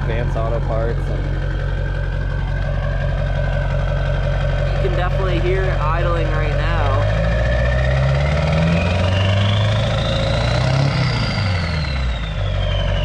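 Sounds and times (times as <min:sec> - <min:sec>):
diesel engine running: 0:00.0 - 0:13.0
turbo whistle: 0:08.6 - 0:13.0.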